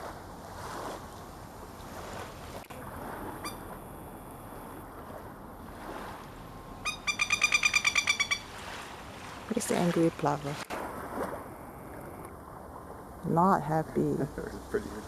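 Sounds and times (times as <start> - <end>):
surf washing on shore: 0.0 - 6.8, 8.4 - 13.2
wind: 0.0 - 15.0
plover alarm calls: 3.0 - 5.1, 5.7 - 12.4.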